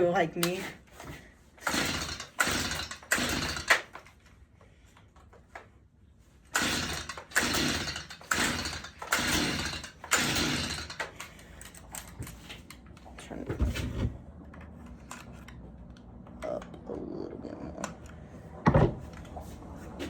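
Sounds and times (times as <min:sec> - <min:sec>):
chainsaw starter rope pulls: 0:00.4 - 0:04.3, 0:06.5 - 0:12.8.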